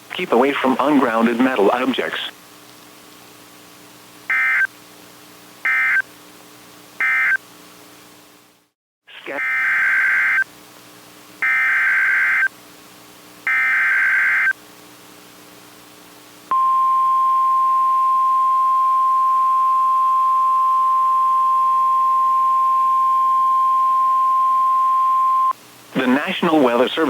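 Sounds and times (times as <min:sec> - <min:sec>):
screechy digital data bursts: 0:11.4 - 0:12.5, 0:13.5 - 0:14.5.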